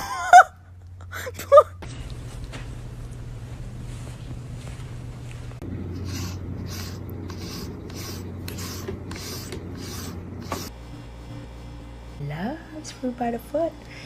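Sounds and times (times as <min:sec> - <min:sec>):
rhythmic scratching strokes: 0:06.0 - 0:10.8.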